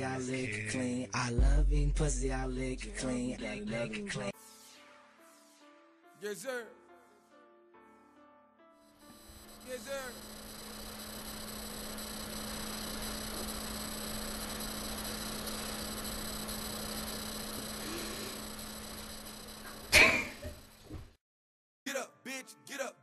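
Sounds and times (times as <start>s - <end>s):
electrical hum: 9.0s - 21.2s.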